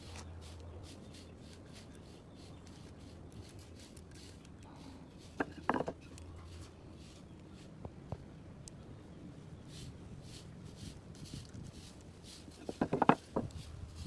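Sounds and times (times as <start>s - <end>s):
scraping and tapping on wood: 5.2s - 6.8s, 12.4s - 13.8s.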